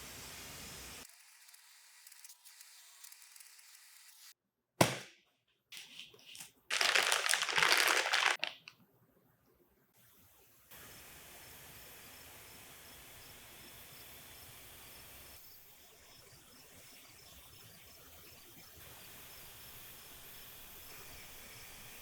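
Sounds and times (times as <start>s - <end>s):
faint steady hiss: 0.0s - 1.1s.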